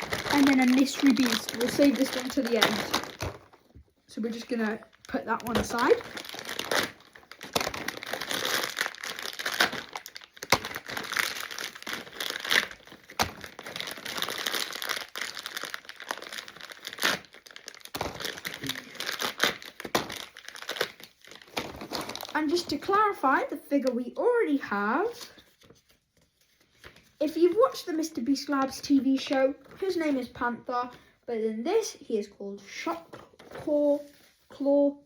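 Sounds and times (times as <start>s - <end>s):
plastic packaging crinkling and tearing: 0.0s - 23.0s.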